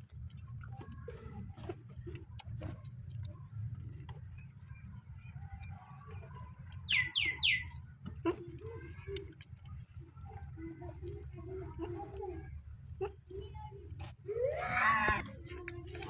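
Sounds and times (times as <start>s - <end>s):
steady low hum: 0.0s - 16.0s
small bird chirping: 6.7s - 8.4s.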